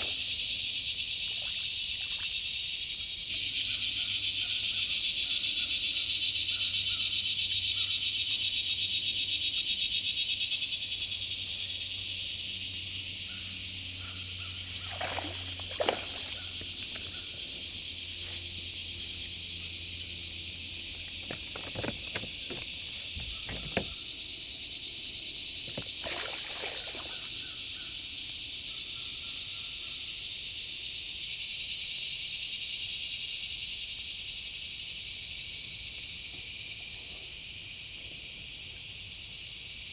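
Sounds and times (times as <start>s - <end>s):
buzzing insects: 0.0s - 39.9s
water sloshing: 14.8s - 17.0s, 25.7s - 27.3s.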